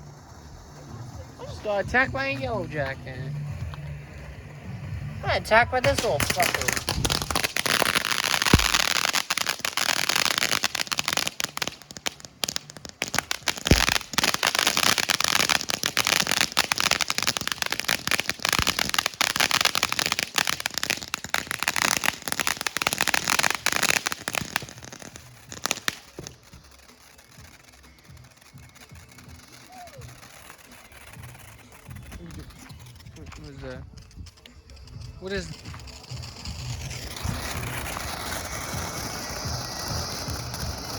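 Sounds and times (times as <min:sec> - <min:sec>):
fireworks crackling: 0:00.0 - 0:40.9
loud firework bang: 0:05.9 - 0:09.1, 0:13.6 - 0:14.2.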